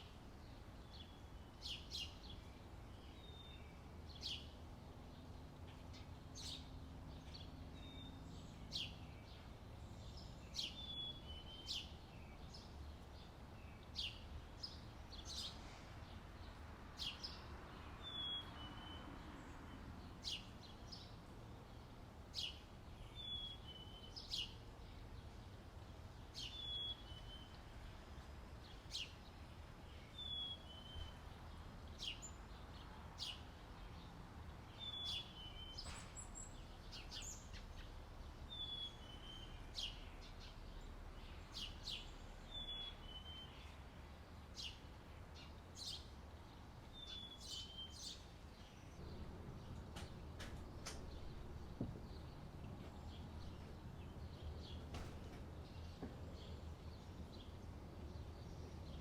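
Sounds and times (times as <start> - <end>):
bird chirping: 0.0 - 25.4, 26.2 - 27.7, 28.6 - 43.9, 44.6 - 59.0
faint low rumble: 48.7 - 54.9.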